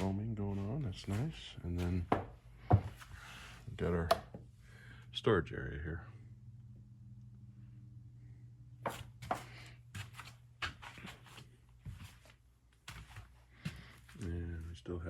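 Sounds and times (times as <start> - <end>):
footsteps: 0.0 - 3.4, 8.8 - 14.4
steady low hum: 0.0 - 15.0.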